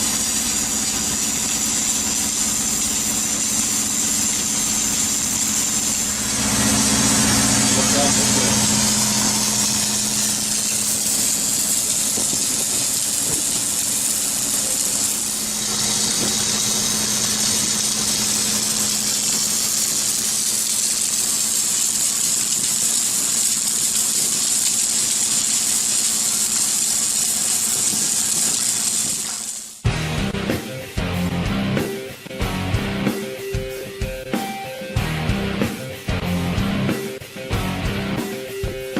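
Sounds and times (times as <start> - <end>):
machinery low hum: 0.0 - 20.0
machinery high hiss: 0.0 - 29.8.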